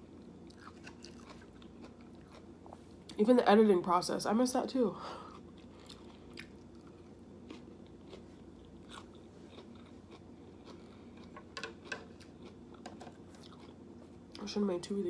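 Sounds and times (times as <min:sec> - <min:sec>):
chewing and biting food: 0:00.4 - 0:02.8, 0:05.2 - 0:13.8.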